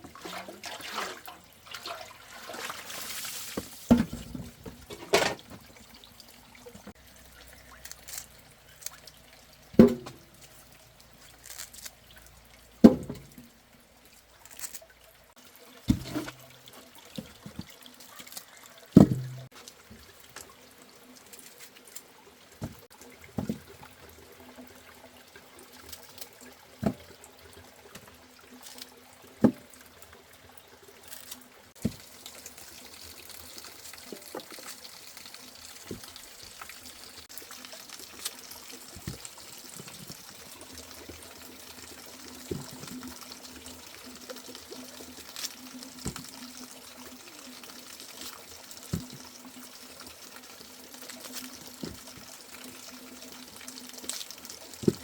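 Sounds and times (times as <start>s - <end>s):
water trickling and pouring: 0.0s - 55.0s.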